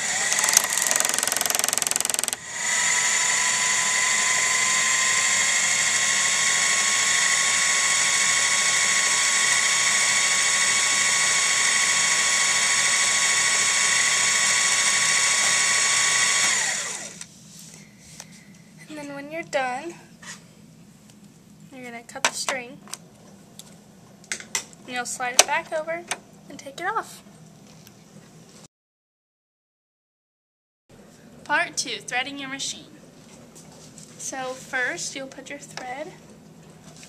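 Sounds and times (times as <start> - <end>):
sewing machine motor whine: 0.0 - 17.2.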